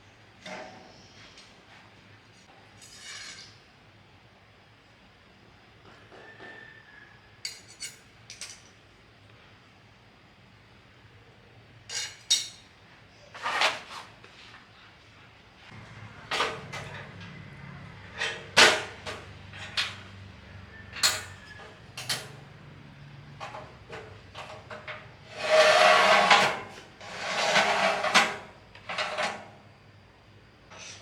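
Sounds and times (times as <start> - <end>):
hand tools and metal parts clattering: 7.4 - 8.8, 11.9 - 12.7, 15.7 - 29.6
metal scraping: 23.3 - 29.4.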